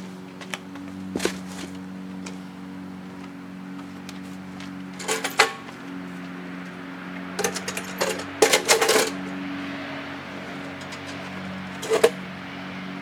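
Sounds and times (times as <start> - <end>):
metal tools clinking: 4.9 - 6.0, 7.3 - 9.4, 10.3 - 12.2.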